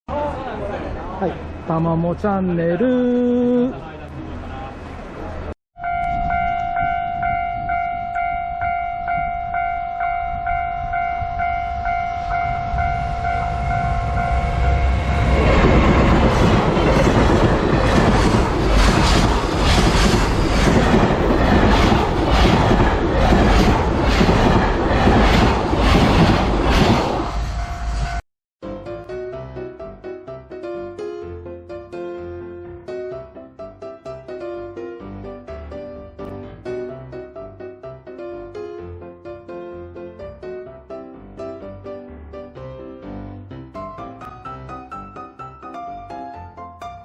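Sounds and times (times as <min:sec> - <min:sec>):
freight train passing: 0:00.2 - 0:28.2
level crossing warning bell ringing: 0:05.8 - 0:15.4
train wheels clattering over rail joints: 0:15.6 - 0:27.1.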